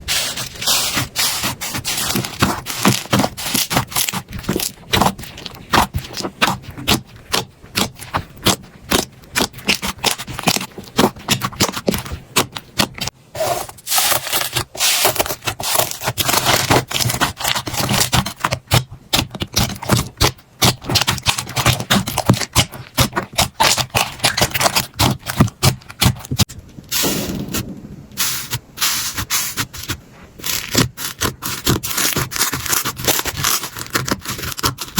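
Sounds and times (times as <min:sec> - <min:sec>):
slime crackling and popping: 0:14.1 - 0:28.6.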